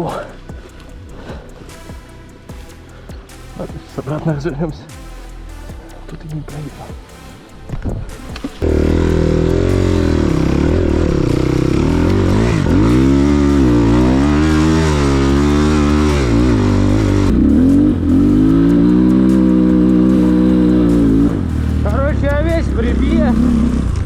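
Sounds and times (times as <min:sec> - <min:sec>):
dirt bike engine revving: 0:08.5 - 0:24.0.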